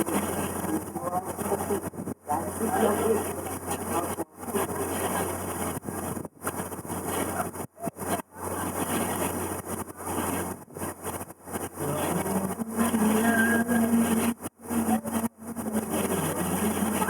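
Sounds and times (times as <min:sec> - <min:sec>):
boat engine running: 0:00.0 - 0:17.0
wind noise on microphone: 0:00.0 - 0:17.0.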